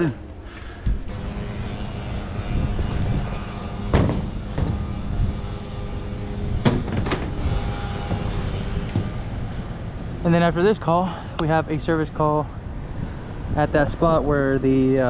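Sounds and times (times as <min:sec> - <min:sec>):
low machinery hum: 0:00.0 - 0:15.0
sharp knocks: 0:00.8 - 0:05.9, 0:06.6 - 0:09.3.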